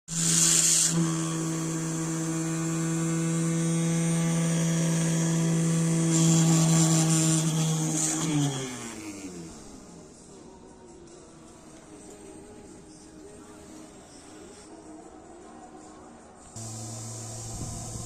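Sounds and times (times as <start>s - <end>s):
electric hand tool motor humming: 0.1s - 9.9s, 16.6s - 18.0s.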